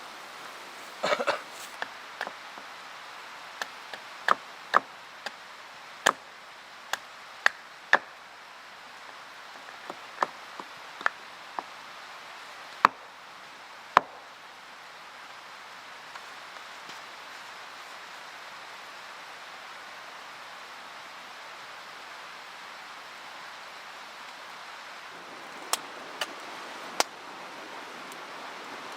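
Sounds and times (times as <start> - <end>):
steady hiss: 0.0 - 7.4.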